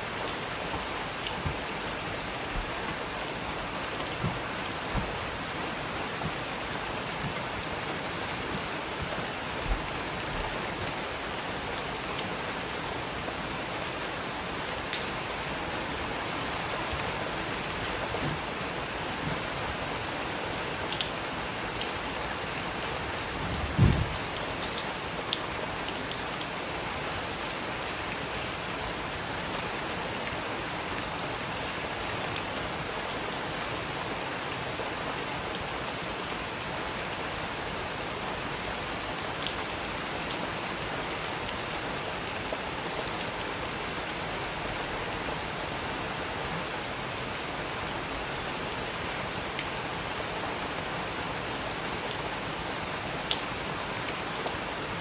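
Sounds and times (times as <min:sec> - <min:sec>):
steady rain falling: 0:00.0 - 0:55.0
soft low thumps: 0:03.6 - 0:05.5.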